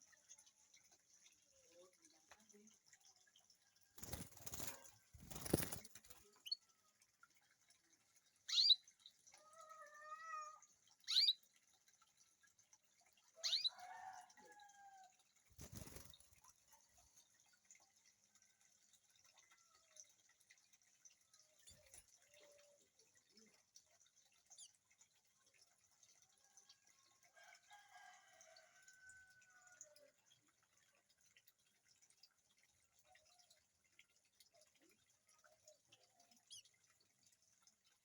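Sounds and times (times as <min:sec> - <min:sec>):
wings flapping: 0:04.0 - 0:06.4, 0:15.5 - 0:16.5
canaries chirping: 0:08.5 - 0:08.8, 0:11.1 - 0:11.4, 0:13.4 - 0:13.7.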